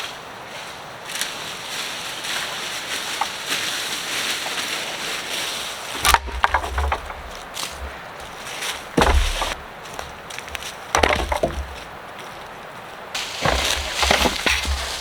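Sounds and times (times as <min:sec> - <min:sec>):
scratchy rustling: 0:03.5 - 0:10.2, 0:13.2 - 0:15.0
wood splintering snaps: 0:06.0 - 0:08.0
wood cracking with thud: 0:06.0 - 0:11.9, 0:13.2 - 0:15.0.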